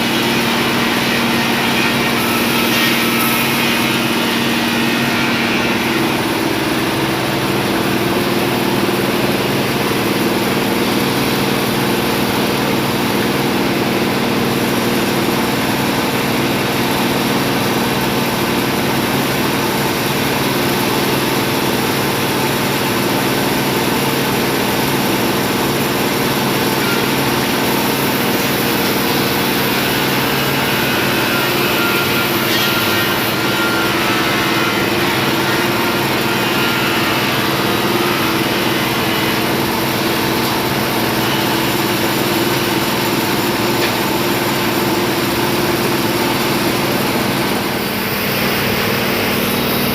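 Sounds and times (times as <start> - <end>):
engine running steadily: 39.4 - 49.9.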